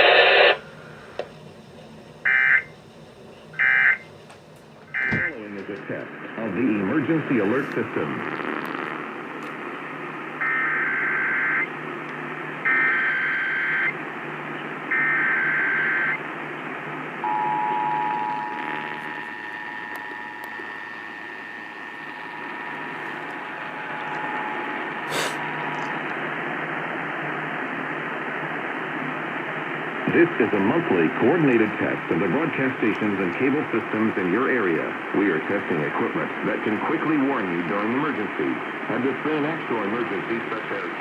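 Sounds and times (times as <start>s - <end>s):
radio hiss: 0.0s - 41.0s
two-tone attention signal: 17.2s - 25.7s.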